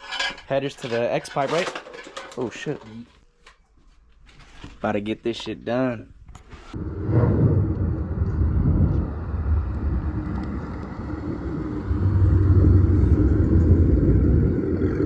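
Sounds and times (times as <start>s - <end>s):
low car exhaust rumble: 6.8s - 15.0s.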